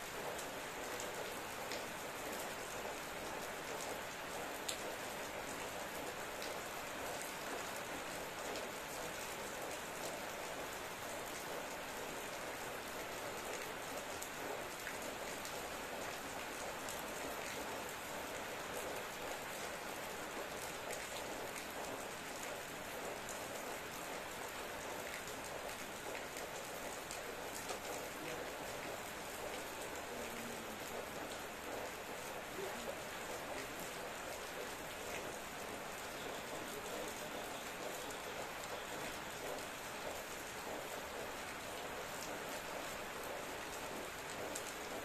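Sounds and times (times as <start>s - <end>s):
raindrops tapping on a surface: 0.1s - 45.0s
rain hissing: 27.4s - 45.0s.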